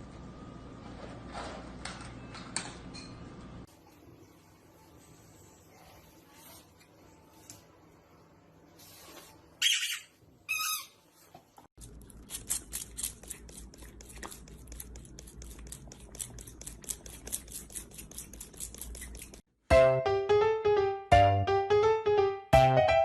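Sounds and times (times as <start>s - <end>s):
high-pitched animal squawks: 9.6s - 11.0s.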